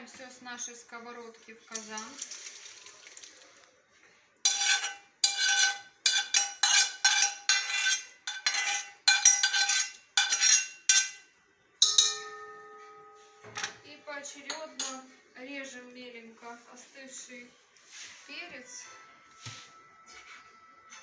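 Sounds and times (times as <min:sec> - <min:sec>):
metal spoon scraping frying pan: 0:04.5 - 0:12.3
ringing metallic knock: 0:11.8 - 0:13.8.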